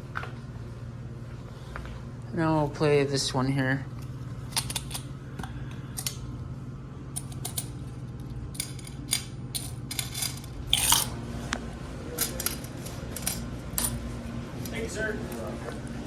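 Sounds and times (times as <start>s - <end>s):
steady low hum: 0.0s - 16.0s
coin mechanism clicks: 4.5s - 5.1s, 7.1s - 11.2s, 12.1s - 14.0s
coins clinking into machine: 4.5s - 5.1s, 7.1s - 7.9s, 8.5s - 11.2s, 12.1s - 14.0s.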